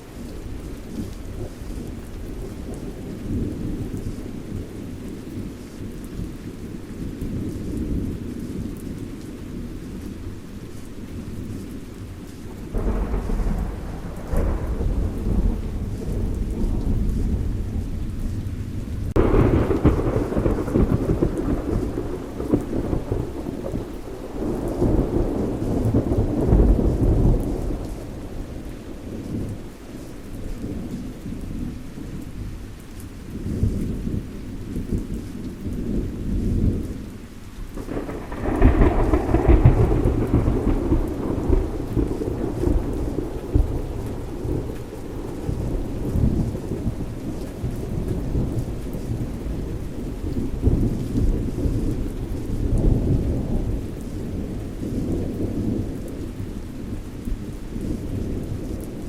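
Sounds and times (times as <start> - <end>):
thunder rumbling: 0.0 - 32.7, 33.3 - 59.0
steady rain: 0.0 - 59.0
loud thunder peals: 12.7 - 28.5, 37.8 - 53.9.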